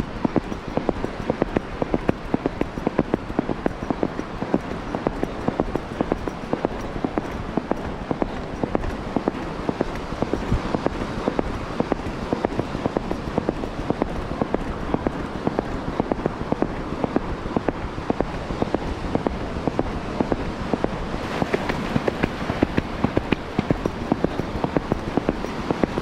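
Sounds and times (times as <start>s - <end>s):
horse hoofbeats galloping: 0.0s - 26.0s
wind rumbling on microphone: 0.0s - 26.0s.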